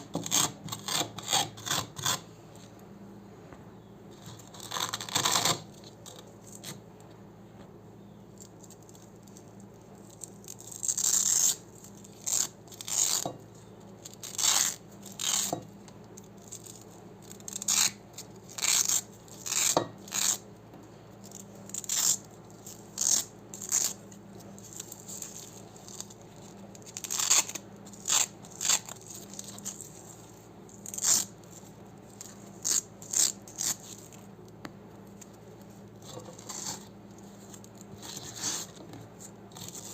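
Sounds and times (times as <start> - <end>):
velcro strips ripping apart: 4.3 - 6.8, 10.0 - 13.3, 14.0 - 15.6, 16.2 - 20.4, 21.3 - 34.3, 36.0 - 39.9.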